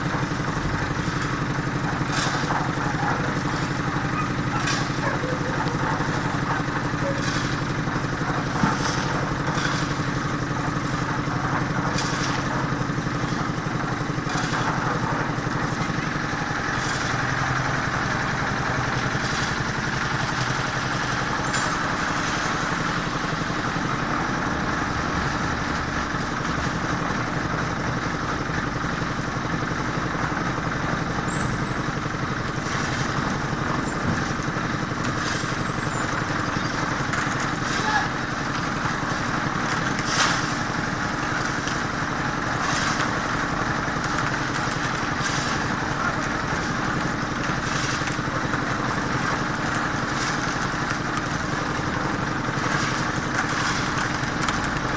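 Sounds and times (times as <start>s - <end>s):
machinery engine running: 0.0s - 54.9s.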